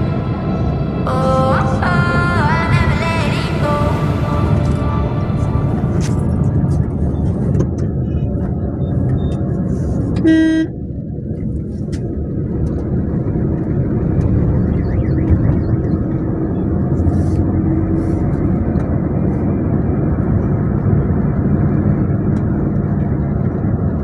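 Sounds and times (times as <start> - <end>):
road noise: 0.0 - 24.0
vehicle engine drone: 0.0 - 24.0.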